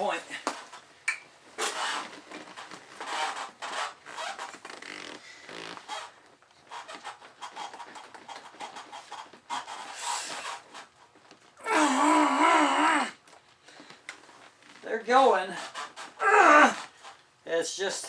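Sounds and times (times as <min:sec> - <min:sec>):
rubber boots squeaking and rubbing: 0:00.3 - 0:11.9, 0:13.7 - 0:17.3
person groaning with strain: 0:11.6 - 0:13.2, 0:16.2 - 0:16.9.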